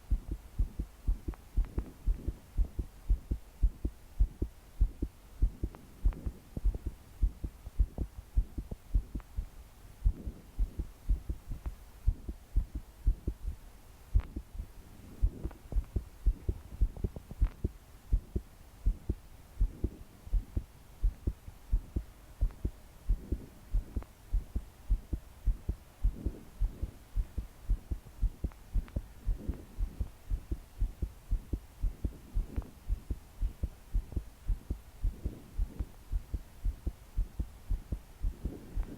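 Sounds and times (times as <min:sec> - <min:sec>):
heartbeat pounding: 0:00.0 - 0:38.9
soft breathing: 0:10.0 - 0:12.8, 0:19.6 - 0:38.9.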